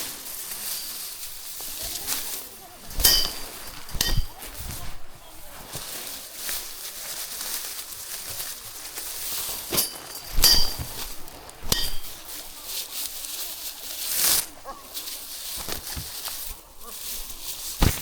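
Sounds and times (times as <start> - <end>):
rustling swish: 0.0 - 18.0
rice stalks knocking on container: 0.3 - 6.8, 8.8 - 13.4, 15.2 - 16.5, 17.6 - 18.0
ringing clink: 2.9 - 4.4, 9.7 - 12.2.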